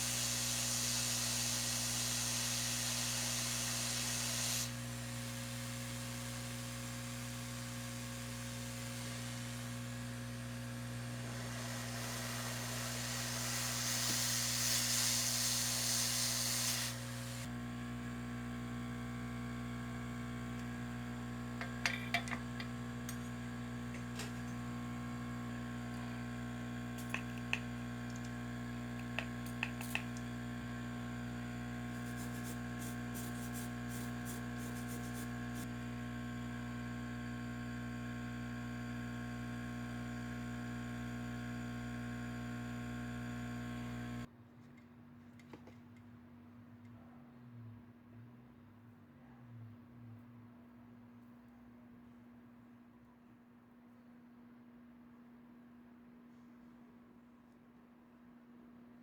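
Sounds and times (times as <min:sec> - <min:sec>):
hiss of blowing air: 0:00.0 - 0:04.8, 0:11.2 - 0:17.5, 0:31.8 - 0:35.7
electrical hum: 0:00.0 - 0:44.3.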